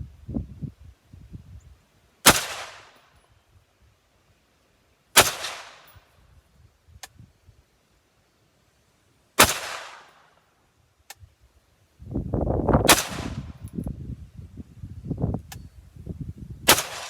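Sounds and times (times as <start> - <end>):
rifle shots with echo: 2.2 - 3.0, 5.2 - 5.9, 9.4 - 10.3, 12.9 - 13.6, 16.7 - 17.0.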